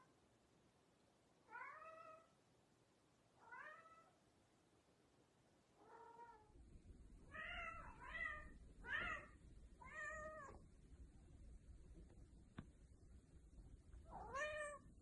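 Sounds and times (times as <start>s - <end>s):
cat meowing: 1.5s - 2.3s, 3.4s - 4.2s, 7.3s - 10.6s, 14.1s - 14.9s.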